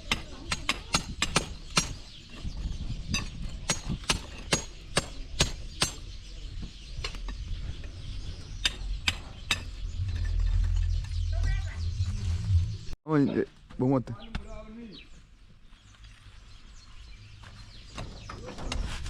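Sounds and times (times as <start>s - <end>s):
low rumble: 9.0s - 13.0s.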